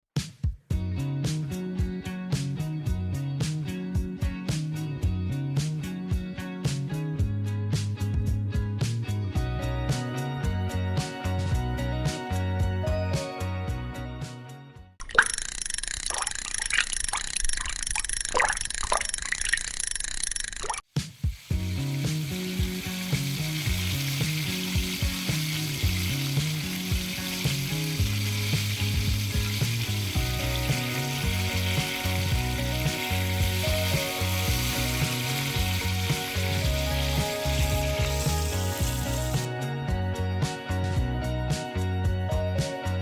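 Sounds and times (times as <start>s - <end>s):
background music: 0.7s - 14.9s, 21.2s - 43.0s
fish sizzling in hot oil: 21.0s - 39.5s.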